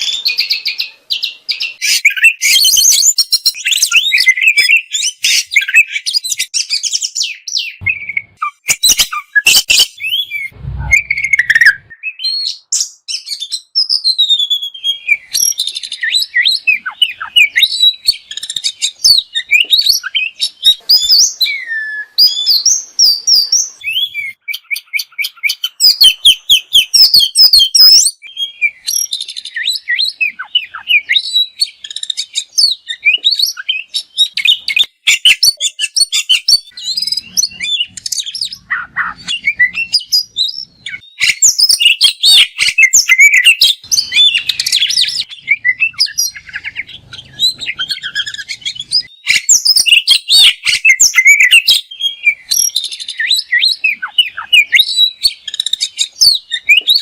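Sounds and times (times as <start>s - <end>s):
songbird singing: 0.0s - 57.0s
low thump: 10.5s - 11.8s.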